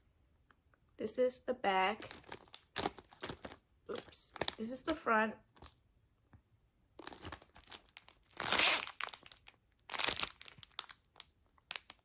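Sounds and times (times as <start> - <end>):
plastic packaging crinkling: 1.8 - 4.9, 5.5 - 5.8, 7.0 - 12.0.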